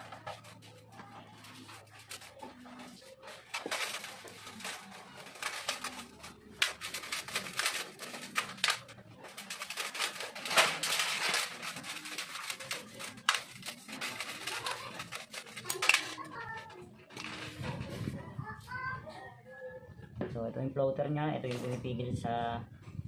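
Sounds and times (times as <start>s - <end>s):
hand tools clicking and scraping: 0.0s - 17.9s.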